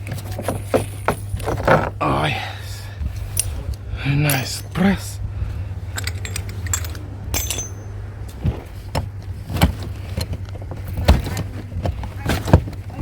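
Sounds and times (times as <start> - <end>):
steady low hum: 0.0 - 13.0
metal scrap clinking together: 5.9 - 8.0.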